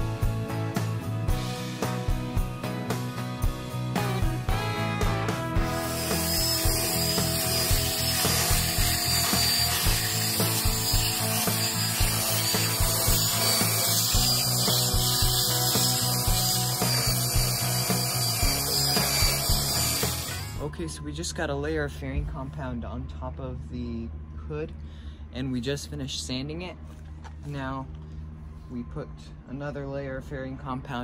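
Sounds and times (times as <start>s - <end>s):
power sander grinding: 5.6s - 20.6s.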